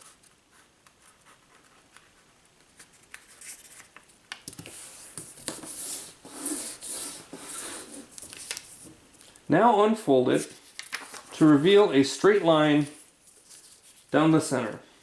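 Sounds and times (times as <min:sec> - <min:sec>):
paper being folded and creased: 0:00.0 - 0:09.0, 0:10.5 - 0:11.6.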